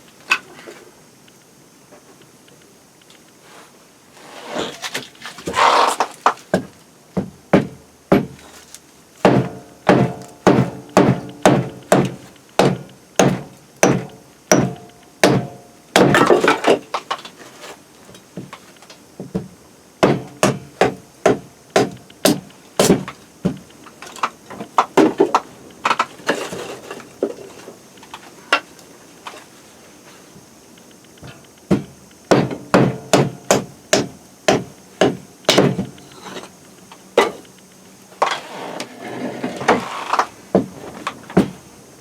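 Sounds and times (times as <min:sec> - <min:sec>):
hand tool striking wood: 0:05.4 - 0:17.3, 0:19.2 - 0:27.4, 0:31.2 - 0:36.5, 0:37.2 - 0:37.4.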